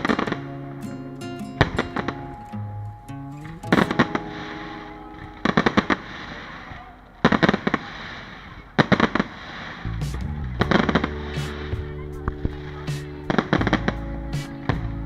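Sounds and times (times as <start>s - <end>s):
music playing: 0.0s - 7.0s, 10.6s - 15.0s
fireworks cracking: 3.7s - 4.4s.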